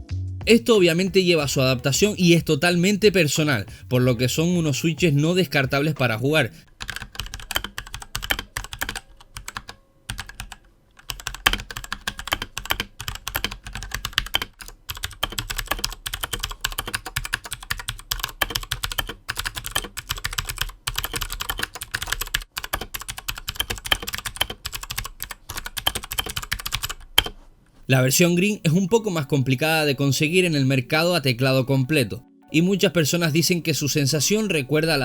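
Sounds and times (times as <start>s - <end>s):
mechanical keyboard typing: 6.7s - 27.4s.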